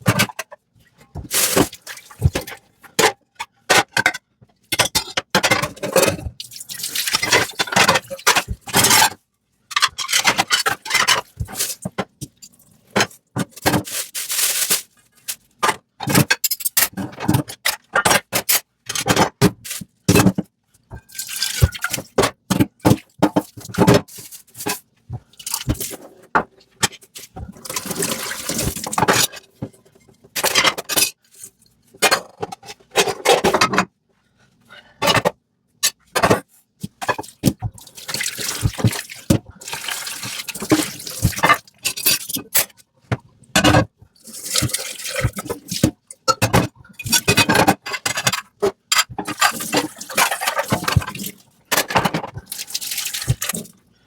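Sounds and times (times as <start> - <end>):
running and splashing water: 37.7 - 41.5.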